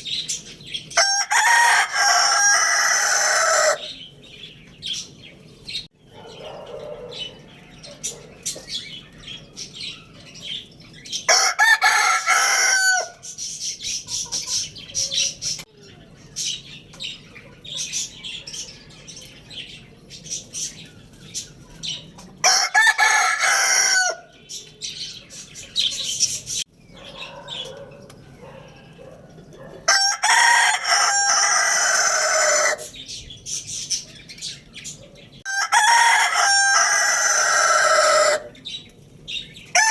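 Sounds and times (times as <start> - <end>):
fowl chirping and clucking: 0.0 - 39.9
roosters crowing: 0.9 - 4.1, 11.2 - 13.5, 22.2 - 24.6, 27.0 - 33.1, 35.4 - 38.7, 39.7 - 39.9.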